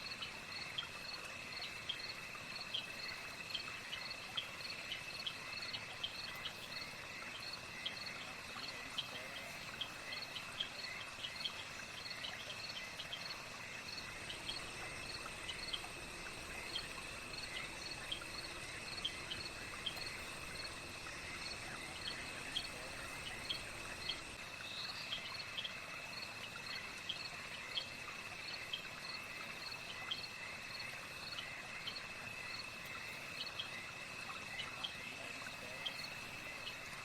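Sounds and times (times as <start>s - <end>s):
crickets trilling: 0.0s - 37.0s
insect chirps: 0.0s - 37.0s
higher-pitched insect trill: 12.0s - 25.4s.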